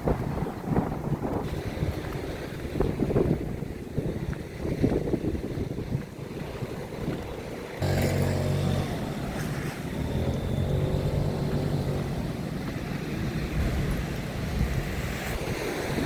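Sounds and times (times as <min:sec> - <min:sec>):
motor engine humming: 0:07.8 - 0:14.0.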